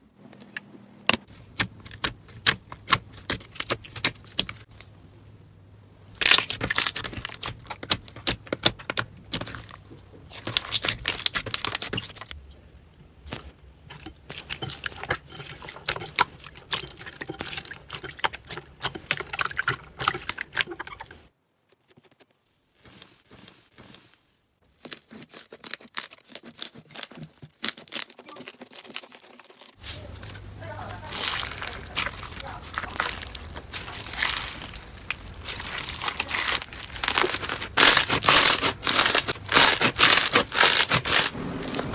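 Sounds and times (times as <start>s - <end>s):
slime crackling and popping: 6.2s - 12.4s, 24.8s - 41.9s.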